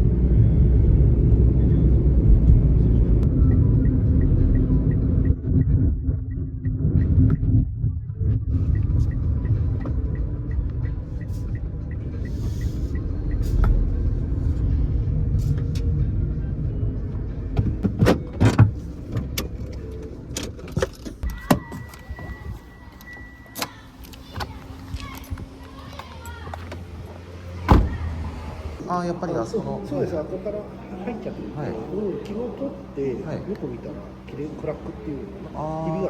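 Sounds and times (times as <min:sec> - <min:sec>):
car engine rumble: 0:00.0 - 0:36.0
light regular ticking: 0:08.6 - 0:16.0
steady high beep: 0:21.7 - 0:23.6.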